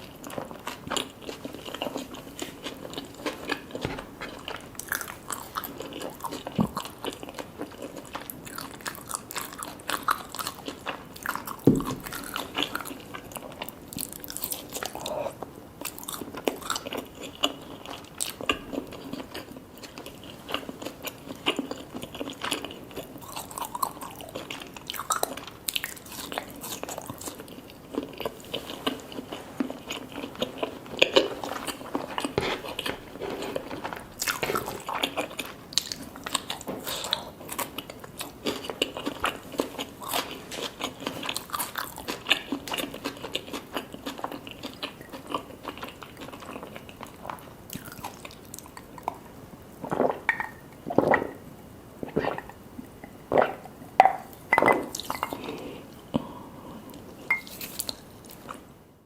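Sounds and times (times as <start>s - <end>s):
person chewing crunchy food: 0.0s - 58.7s
low thump: 11.7s - 12.2s.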